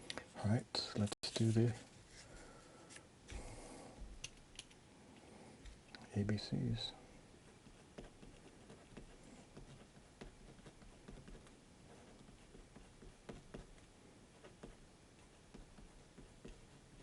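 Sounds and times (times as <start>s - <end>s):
pencil writing on paper: 7.4s - 17.0s.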